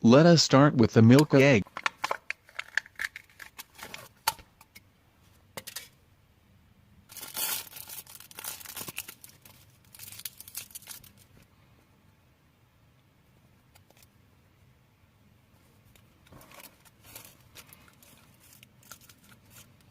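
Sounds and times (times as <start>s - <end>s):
wrapper crinkling: 7.1s - 11.4s, 16.3s - 19.9s
wrapper tearing and rustling: 7.1s - 11.4s, 16.3s - 19.9s.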